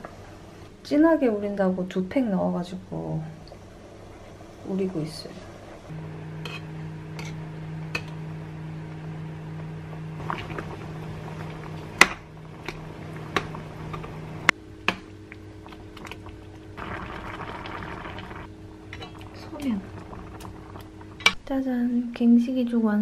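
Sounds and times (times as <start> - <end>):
steady low hum: 0.0 - 22.5.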